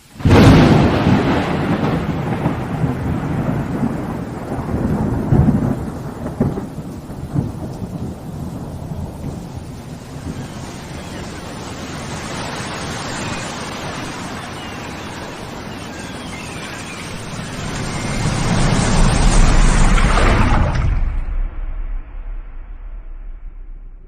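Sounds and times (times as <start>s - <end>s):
steady rushing noise: 9.0s - 24.0s.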